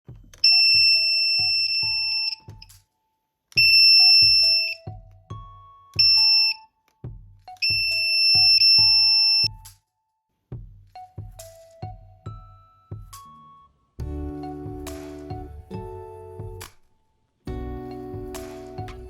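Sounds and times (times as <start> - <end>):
background music with steady beat: 0.0 - 19.0
piezo buzzer high-pitched tone: 7.6 - 9.5.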